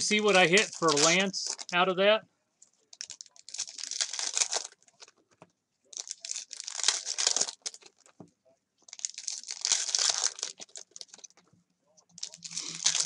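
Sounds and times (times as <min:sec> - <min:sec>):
wrappers torn and crinkled: 0:00.1 - 0:01.8, 0:02.8 - 0:05.3, 0:05.9 - 0:08.1, 0:08.9 - 0:11.4, 0:12.2 - 0:13.0.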